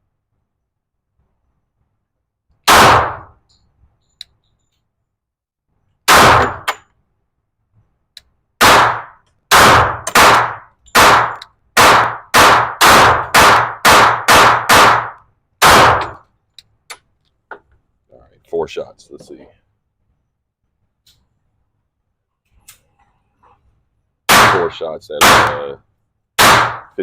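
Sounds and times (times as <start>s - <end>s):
gunshots with echoing tails: 2.7s - 3.4s, 6.1s - 6.8s, 8.6s - 16.2s, 24.3s - 25.7s, 26.4s - 27.0s.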